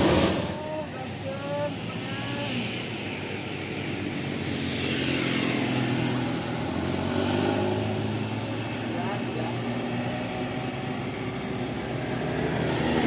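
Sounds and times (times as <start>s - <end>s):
vehicle engine passing by: 0.0s - 0.9s, 4.6s - 13.0s.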